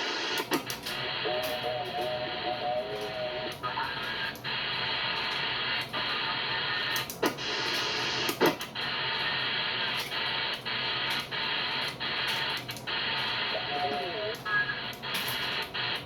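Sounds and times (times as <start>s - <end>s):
radio hiss and static: 0.0s - 16.0s.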